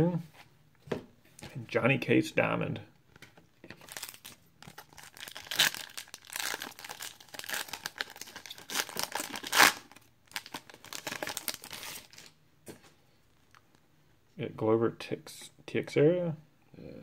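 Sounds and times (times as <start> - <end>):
foil wrapper tearing and crinkling: 3.8 - 12.3.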